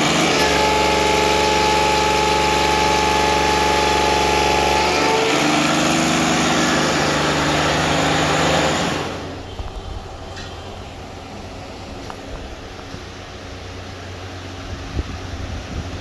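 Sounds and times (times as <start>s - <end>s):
hydraulic pump whine: 0.0s - 16.0s.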